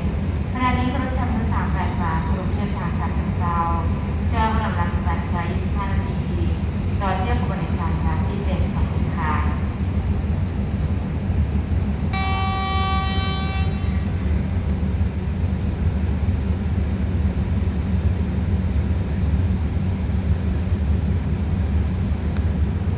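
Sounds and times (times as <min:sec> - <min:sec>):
locomotive engine rumbling: 0:00.0 - 0:22.9
train horn toot: 0:12.1 - 0:14.3.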